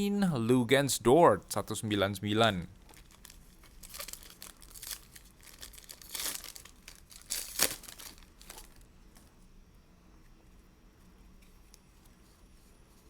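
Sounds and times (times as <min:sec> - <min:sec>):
wrapper crinkling and tearing: 0:02.8 - 0:09.3.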